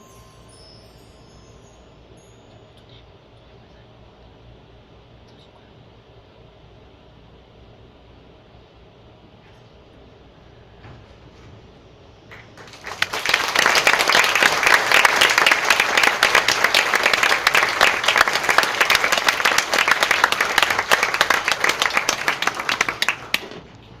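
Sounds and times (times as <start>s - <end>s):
audience applauding: 12.3s - 23.7s.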